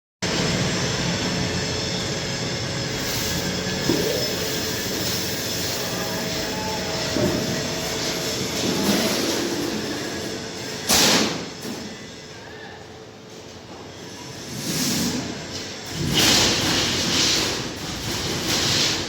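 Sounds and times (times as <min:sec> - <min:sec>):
short machine whines: 0:00.2 - 0:12.2
laser cutter hiss and hum: 0:00.3 - 0:12.2.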